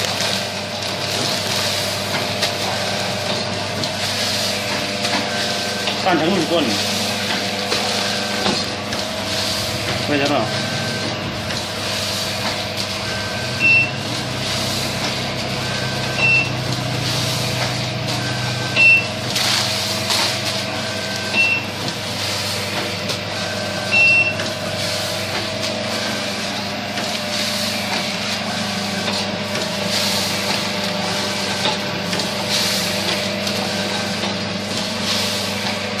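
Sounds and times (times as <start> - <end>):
packing machine hum: 0.0 - 36.0
short high beep: 13.6 - 14.0, 24.0 - 24.4.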